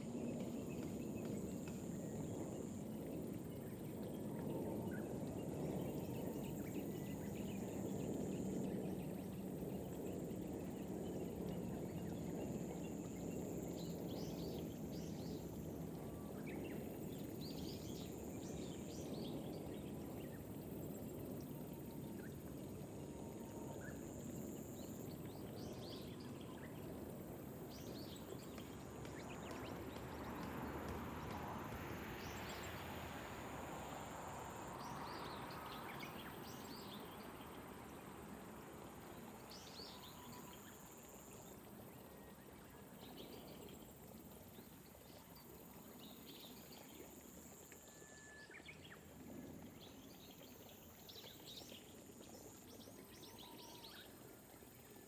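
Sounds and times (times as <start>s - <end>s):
gentle rain: 11.3s - 55.0s.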